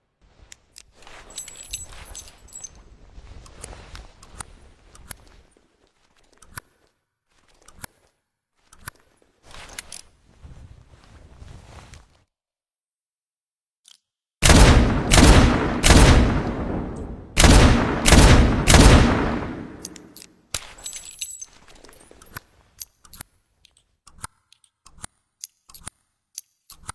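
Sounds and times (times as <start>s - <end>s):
revolver gunshots: 14.4s - 20.1s
gun mechanism metallic clicks: 15.2s - 26.9s.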